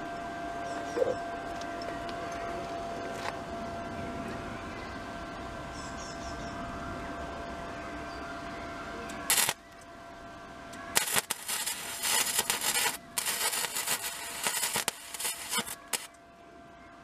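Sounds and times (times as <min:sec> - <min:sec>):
steady hum with faint whine: 0:00.0 - 0:17.0
arc welder crackling: 0:09.1 - 0:09.8, 0:10.7 - 0:16.2.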